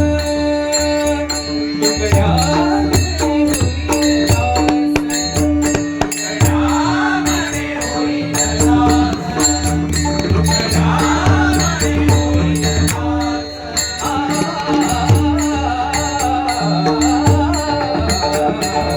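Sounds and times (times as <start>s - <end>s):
metallic jingling percussion: 0.0s - 18.9s
rhythmic drum strokes: 2.2s - 13.2s.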